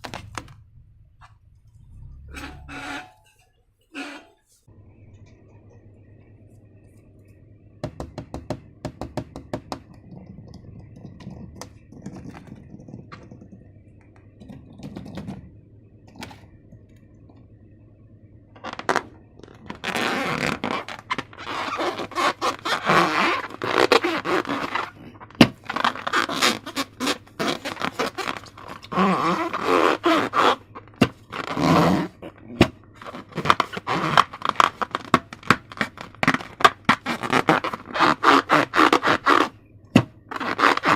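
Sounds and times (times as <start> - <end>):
slime squishing and scraping: 18.8 - 39.6, 40.3 - 40.9.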